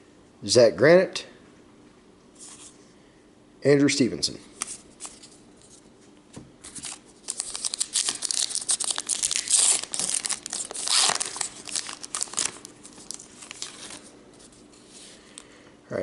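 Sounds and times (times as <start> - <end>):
wrapper crinkling and tearing: 6.7 - 14.1.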